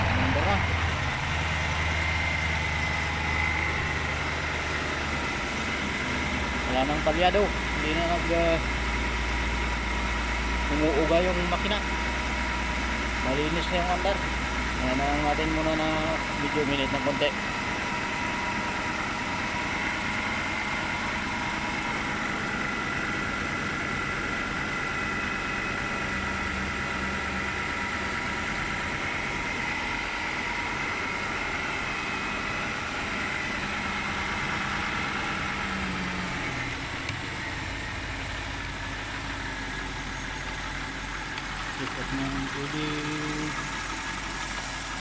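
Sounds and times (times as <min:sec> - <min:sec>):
car engine idling: 0:00.0 - 0:45.0.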